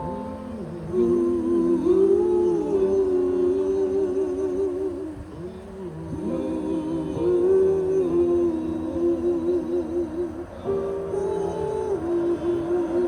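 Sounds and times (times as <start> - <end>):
person humming a slow melody: 0.0 - 13.0.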